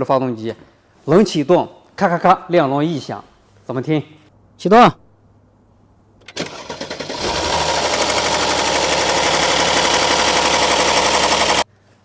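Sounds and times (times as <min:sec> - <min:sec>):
engine cranking and starting: 0:06.2 - 0:11.6
engine running with rapid clatter: 0:06.4 - 0:11.6.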